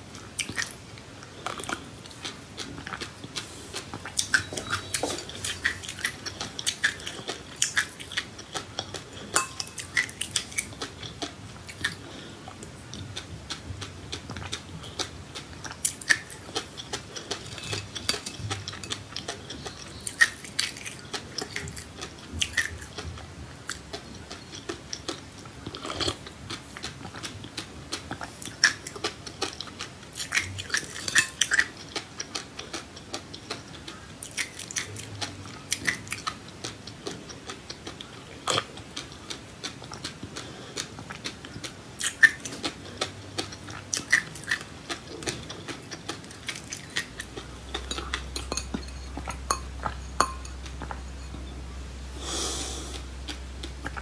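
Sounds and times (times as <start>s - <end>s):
low hum: 47.2s - 54.0s.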